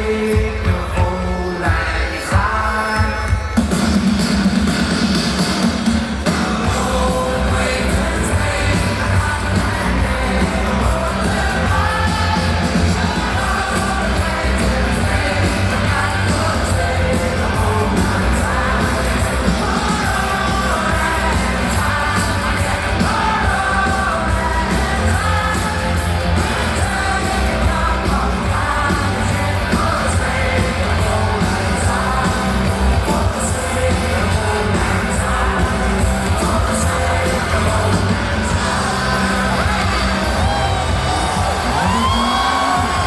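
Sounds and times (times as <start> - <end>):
pop music with singing: 0.0 - 43.0
heavy bass: 3.6 - 43.0.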